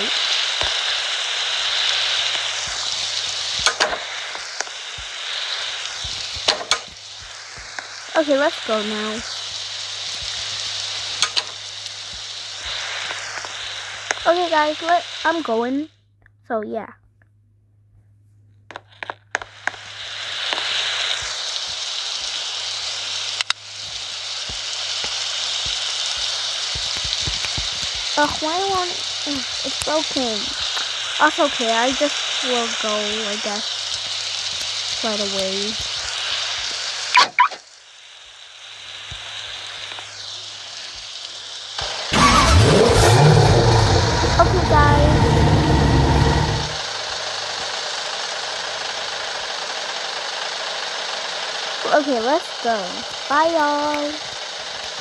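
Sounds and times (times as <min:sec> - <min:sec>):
heavy rain hiss: 0:00.0 - 0:15.9, 0:18.7 - 0:55.0
sharp clicks: 0:10.1 - 0:14.3, 0:23.4 - 0:31.0.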